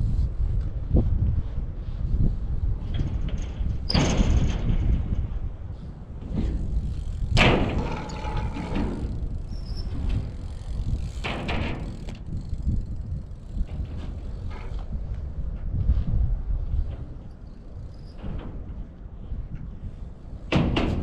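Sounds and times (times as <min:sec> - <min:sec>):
wind buffeting microphone: 0:00.0 - 0:21.0
bike landing on ramps: 0:02.8 - 0:15.8, 0:16.6 - 0:19.7, 0:20.4 - 0:21.0.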